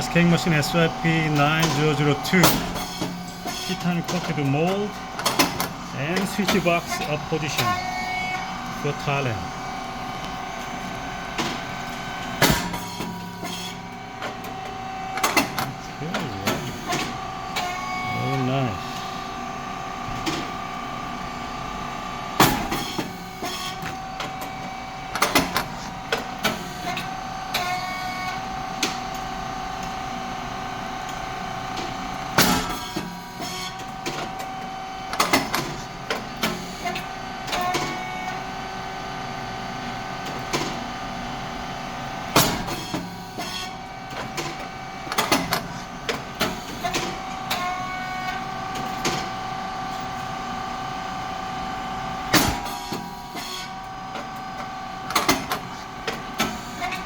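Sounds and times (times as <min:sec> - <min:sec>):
steady machine hum: 0:00.0 - 0:35.2
machine loud pop: 0:12.4 - 0:12.8, 0:52.3 - 0:52.7.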